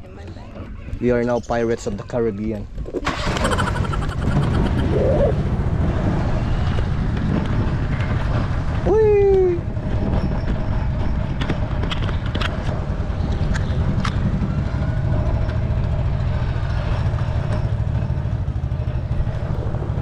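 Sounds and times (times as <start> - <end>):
boat engine droning: 12.8 - 20.0.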